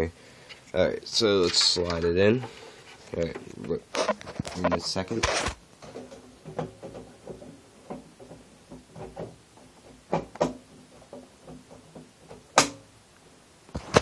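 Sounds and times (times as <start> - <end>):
plastic clicks and knocks: 5.8 - 12.8.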